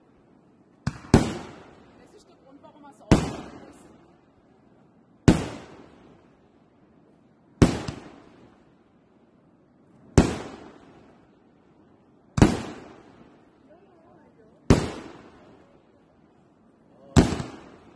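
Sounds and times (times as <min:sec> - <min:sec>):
fireworks bangs with rumbling echo: 0:00.8 - 0:04.2, 0:05.2 - 0:06.5, 0:07.5 - 0:08.8, 0:10.0 - 0:17.9.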